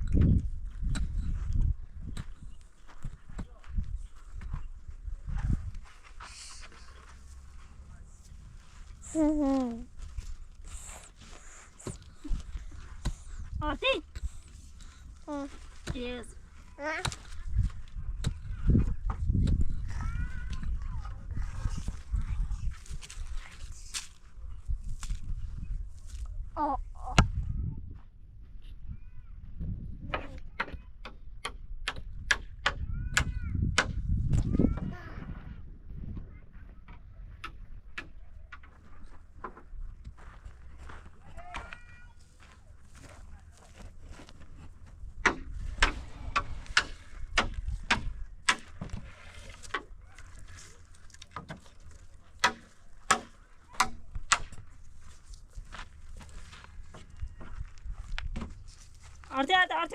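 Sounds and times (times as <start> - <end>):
wood being struck: 45.2 - 49.0, 52.3 - 54.7.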